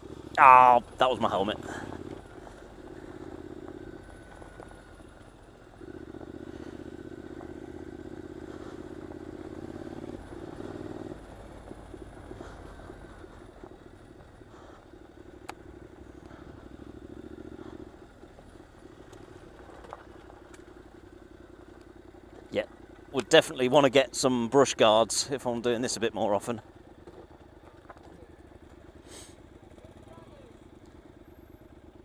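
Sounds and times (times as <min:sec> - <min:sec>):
motorcycle engine revving: 0:00.0 - 0:25.0.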